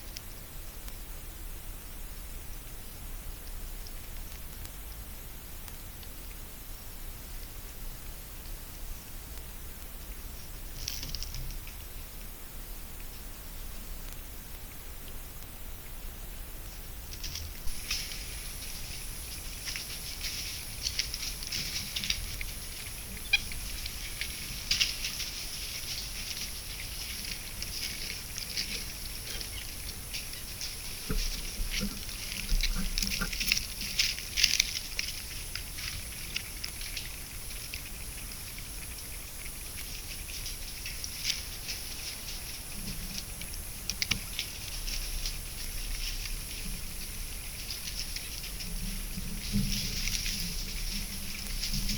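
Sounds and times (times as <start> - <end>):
animal rustling in leaf litter: 17.1 - 51.9.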